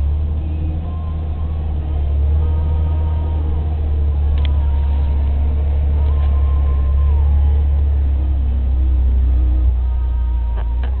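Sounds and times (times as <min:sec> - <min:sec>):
vehicle engine droning: 0:00.0 - 0:11.0.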